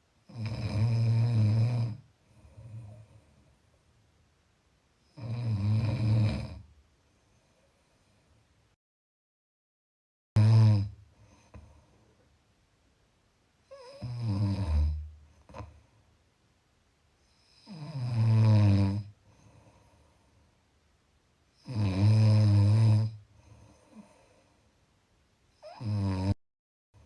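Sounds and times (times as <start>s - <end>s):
person snoring: 0.3s - 3.0s, 5.2s - 6.7s, 10.4s - 11.7s, 13.7s - 15.7s, 17.4s - 19.1s, 21.6s - 23.2s, 25.6s - 26.4s
quiet breathing: 1.8s - 3.9s, 6.5s - 8.8s, 11.0s - 12.4s, 14.8s - 16.2s, 19.0s - 20.8s, 23.1s - 24.9s.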